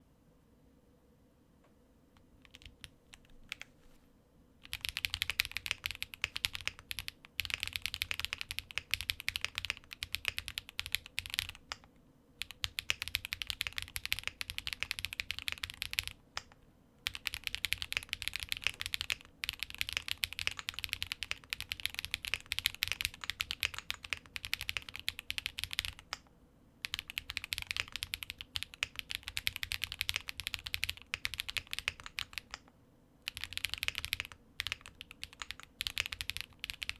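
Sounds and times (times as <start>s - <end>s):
mechanical keyboard typing: 2.4s - 3.7s, 4.6s - 36.9s.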